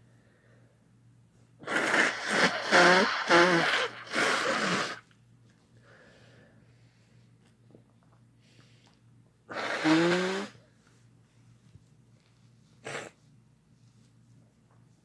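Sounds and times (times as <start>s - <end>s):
faint inhale: 0.0s - 0.8s, 5.8s - 7.3s
person sneezing: 1.6s - 5.0s, 9.5s - 10.6s, 12.8s - 13.2s
sharp burst of breath: 1.6s - 5.0s, 9.5s - 10.6s.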